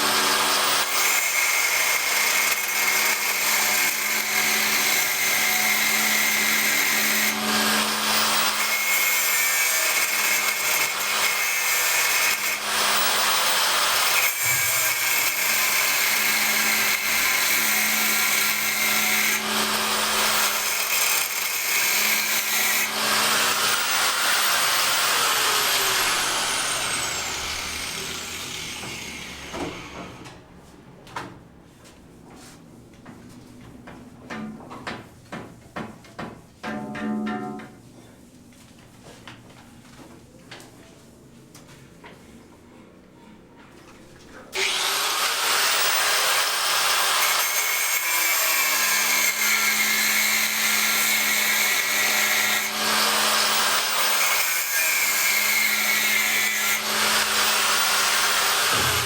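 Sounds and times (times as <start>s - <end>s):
power tool motor running: 11.9s - 30.2s, 44.6s - 47.6s, 55.4s - 59.0s.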